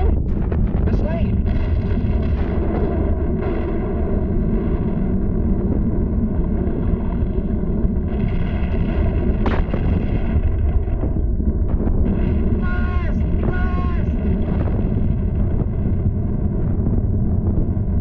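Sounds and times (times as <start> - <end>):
heavy low rumble: 0.0 - 18.0
sharp crack: 8.1 - 18.0.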